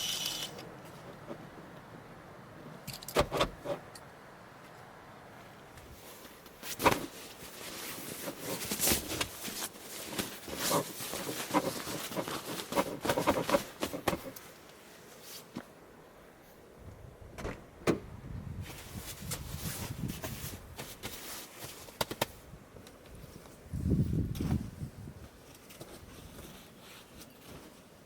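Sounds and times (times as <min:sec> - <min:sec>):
handling clicks and knocks: 0:08.1 - 0:14.5.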